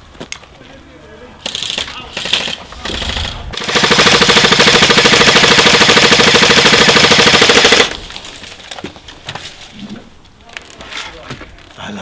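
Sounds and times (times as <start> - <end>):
airsoft gun full-auto burst: 1.4 - 2.6, 3.2 - 8.1.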